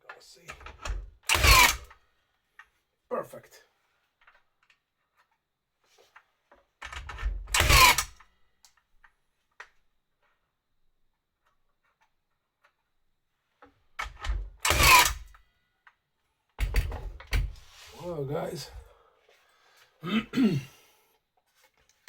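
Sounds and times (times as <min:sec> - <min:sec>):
nail gun firing into wood: 0:01.2 - 0:01.9, 0:07.1 - 0:08.2, 0:14.0 - 0:15.3.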